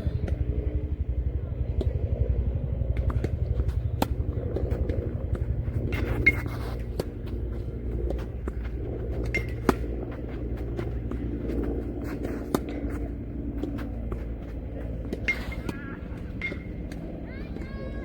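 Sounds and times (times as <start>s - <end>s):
steady low rumble: 0.0s - 18.0s
tennis ball struck by racket: 6.0s - 14.3s.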